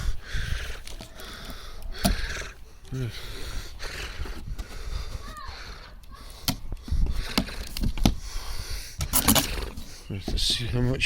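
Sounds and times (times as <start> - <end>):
parts knocking and clattering: 9.0 - 10.8.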